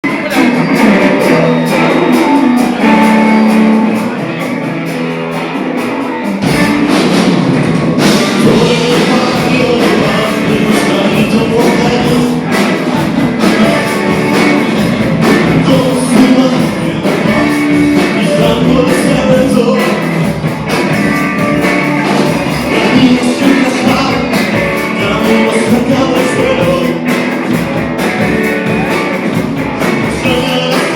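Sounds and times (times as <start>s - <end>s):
rock band playing live: 0.0s - 30.9s.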